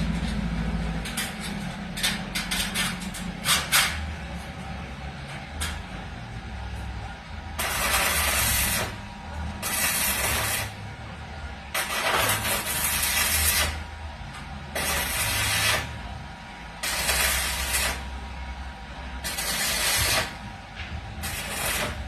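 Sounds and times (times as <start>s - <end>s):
low hum: 0.0s - 22.0s
arc welding hissing and crackling: 6.6s - 10.9s, 11.7s - 22.0s.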